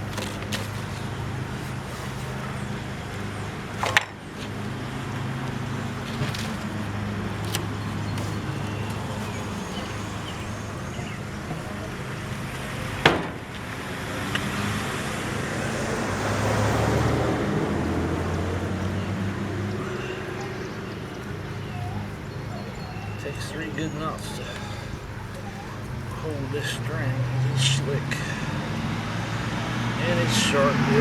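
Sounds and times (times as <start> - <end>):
road traffic hum: 0.0 - 31.0
vehicle passing: 0.0 - 31.0
sharp knock: 13.1 - 13.4.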